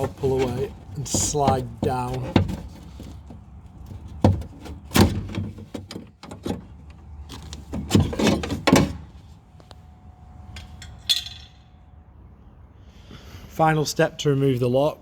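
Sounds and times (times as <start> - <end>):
metal clunks against door shell: 0.0 - 9.2.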